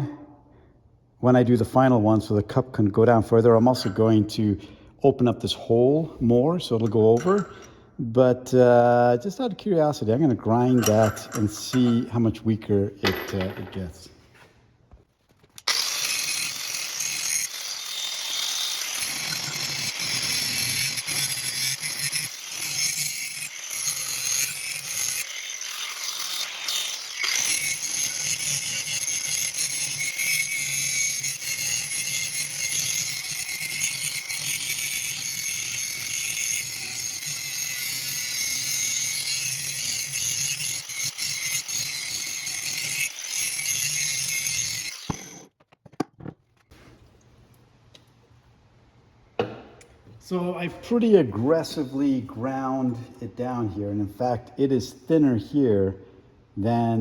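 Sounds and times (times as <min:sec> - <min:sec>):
power grinder grinding steel: 0:15.6 - 0:45.5.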